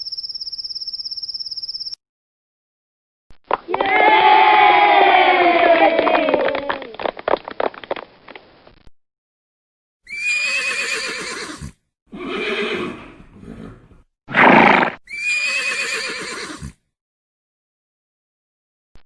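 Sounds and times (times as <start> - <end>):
horse whinnying: 10.1 - 16.8.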